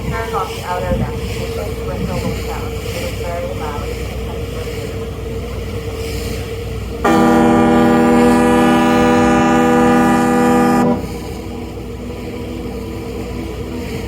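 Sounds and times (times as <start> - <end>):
constant low rumble: 0.0 - 14.0
ferry horn blast: 7.0 - 14.0.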